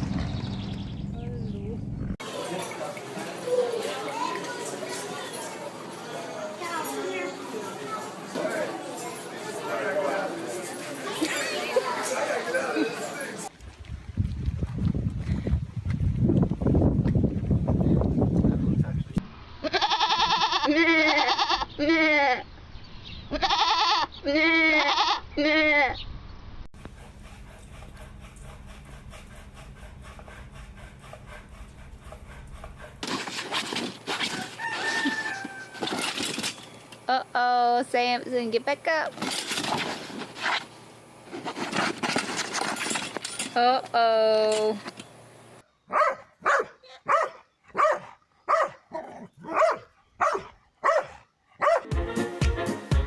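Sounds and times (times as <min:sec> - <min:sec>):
animal bleating: 0:19.6 - 0:22.4, 0:23.3 - 0:26.0
scuffling: 0:33.0 - 0:36.6, 0:39.1 - 0:43.6
rooster crowing: 0:34.2 - 0:36.1
dog barking: 0:45.9 - 0:51.9.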